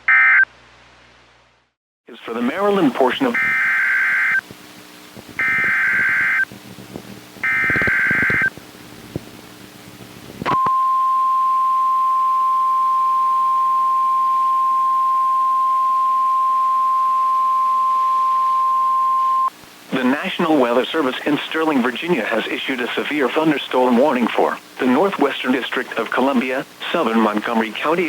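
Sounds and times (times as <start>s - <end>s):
shrill buzzy data tones: 3.3s - 4.4s, 5.4s - 6.5s, 7.4s - 8.5s, 10.5s - 19.5s.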